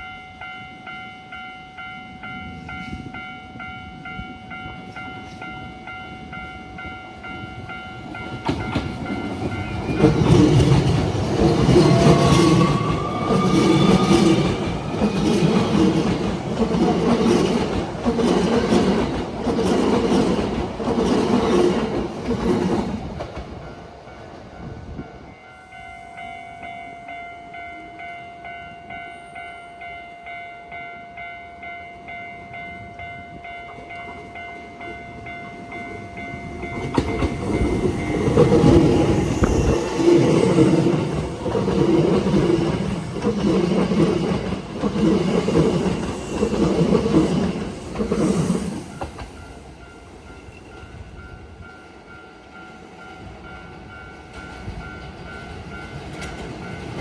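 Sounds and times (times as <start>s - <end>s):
electric train passing: 0.0s - 57.0s
train wheels clacking on rail joints: 8.0s - 23.7s, 33.7s - 49.6s, 54.3s - 57.0s
level-crossing bell ringing: 25.2s - 44.8s.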